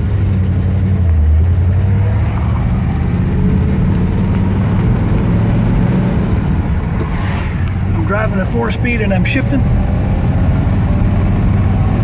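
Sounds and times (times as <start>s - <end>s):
car engine droning inside cabin: 0.0s - 12.0s.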